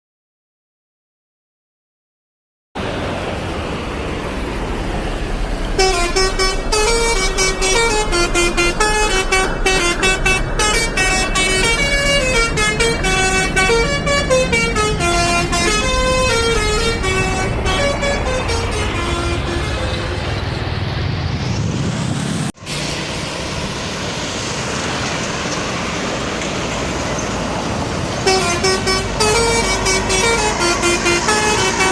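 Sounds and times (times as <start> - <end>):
bus engine and road rumble: 2.8 - 31.9
multi-tone air horn tune: 5.8 - 20.3, 28.2 - 31.9.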